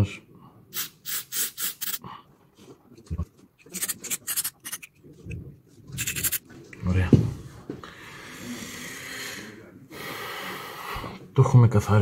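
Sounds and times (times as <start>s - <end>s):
aerosol spray hissing: 0.8s - 2.0s.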